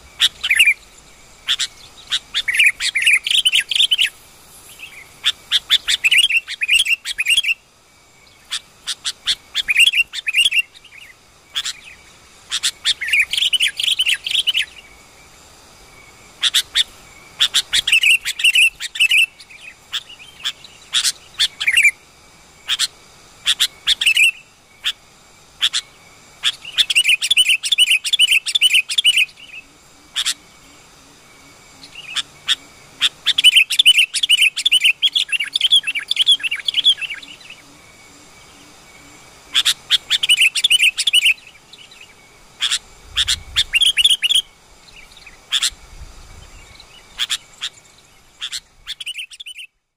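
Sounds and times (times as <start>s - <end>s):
bird chirping in rapid bouts: 1.4s - 4.1s, 25.6s - 29.6s, 39.6s - 44.4s, 47.0s - 49.7s.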